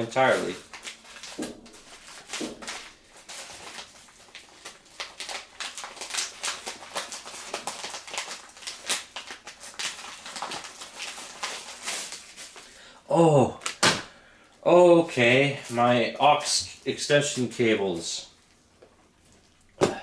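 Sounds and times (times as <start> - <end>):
packaging crinkling and tearing: 0.0 - 12.8, 13.6 - 14.2.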